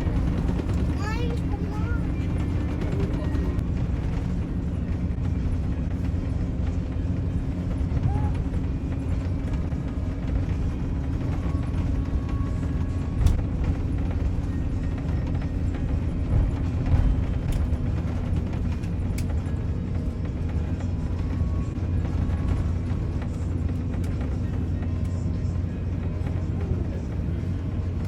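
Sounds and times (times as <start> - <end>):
aircraft cabin engine rumble: 0.0 - 28.0.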